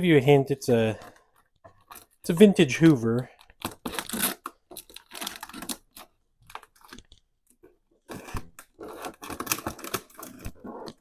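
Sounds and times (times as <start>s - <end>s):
cardboard box and tape tearing: 3.6s - 6.1s, 8.0s - 11.0s.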